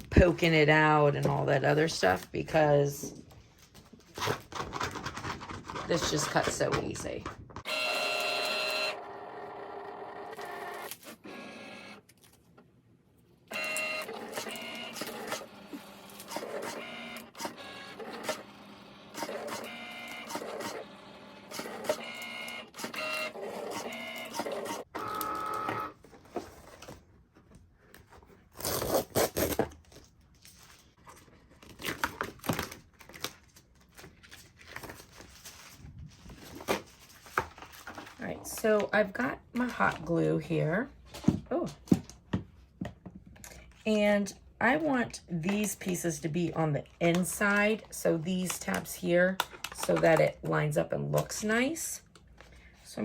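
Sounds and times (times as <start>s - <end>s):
cutting machine motors whirring: 7.7s - 12.0s, 13.5s - 25.9s.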